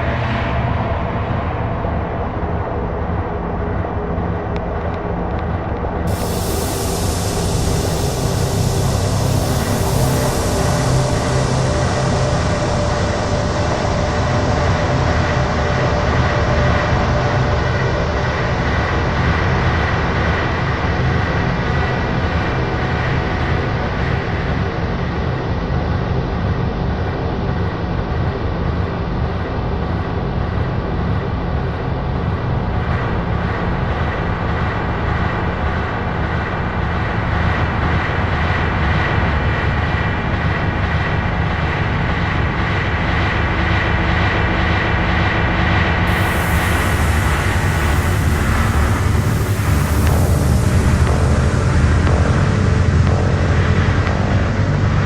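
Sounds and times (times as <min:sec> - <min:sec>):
synthesized rumbling drone: 0:00.0 - 0:55.0
faint regular pulsing: 0:45.8 - 0:55.0.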